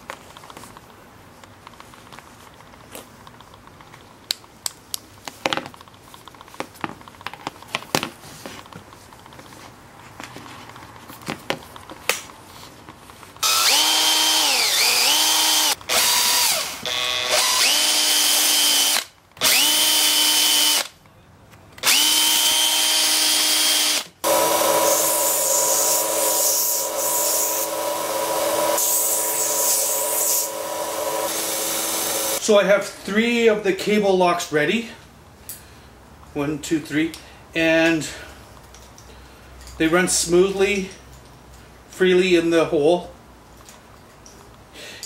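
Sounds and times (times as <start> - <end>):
power drill whining into wood: 13.4 - 20.9, 21.8 - 32.4.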